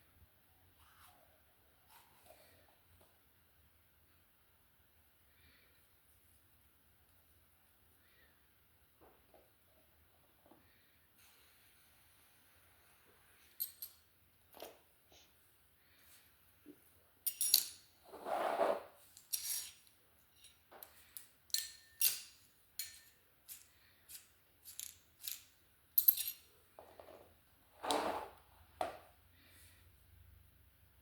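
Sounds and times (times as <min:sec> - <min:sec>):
scraping handling sounds: 0:17.3 - 0:29.0.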